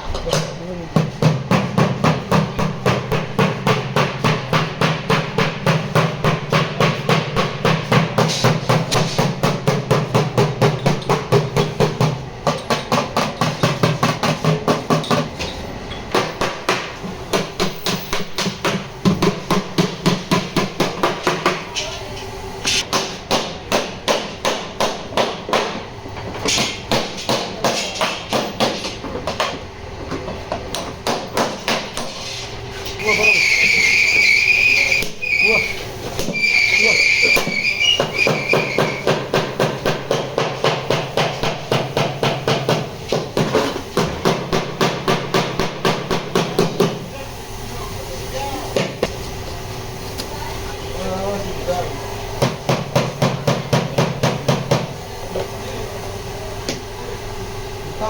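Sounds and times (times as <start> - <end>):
hammer striking sheet metal: 0.3 - 15.3.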